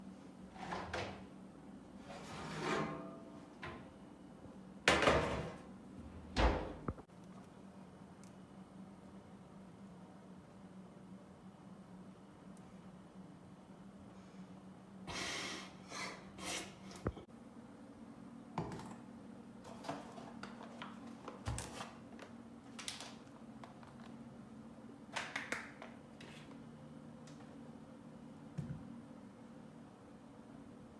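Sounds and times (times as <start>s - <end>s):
faint steady hum: 0.0s - 30.9s
food preparation clicks and taps: 25.2s - 26.0s.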